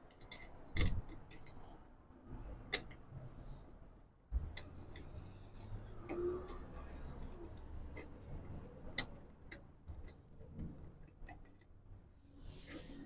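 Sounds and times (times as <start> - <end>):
bird chirping: 0.2 - 1.9, 3.1 - 8.1, 10.4 - 13.0.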